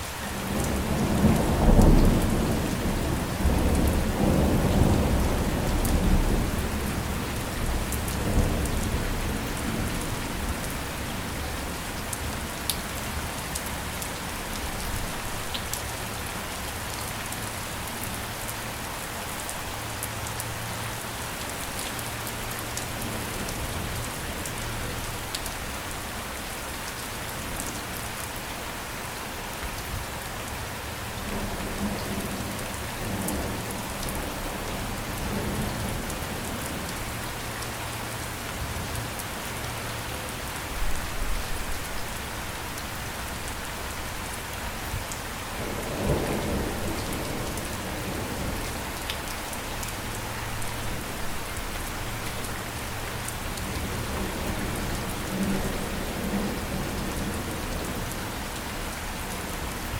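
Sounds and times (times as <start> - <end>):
steady rain falling: 0.0 - 59.9
low thunder rumble: 0.4 - 11.5, 45.5 - 49.0.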